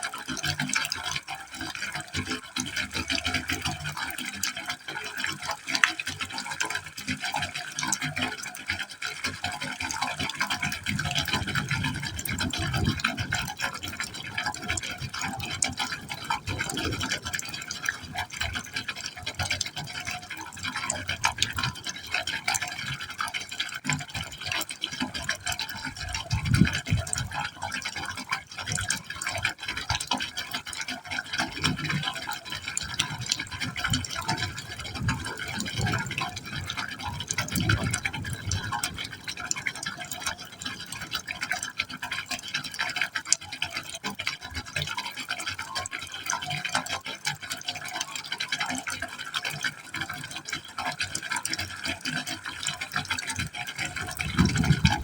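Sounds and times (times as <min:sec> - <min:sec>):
water splashing into pipe: 0:00.0 - 0:55.0
hollow gulps from pipe: 0:09.1 - 0:23.0, 0:25.1 - 0:42.2, 0:53.4 - 0:55.0.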